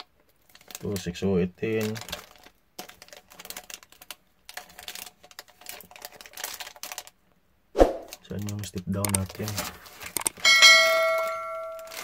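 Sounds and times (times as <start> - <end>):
plastic packets clicking and crinkling: 0.0 - 7.4, 8.1 - 12.0.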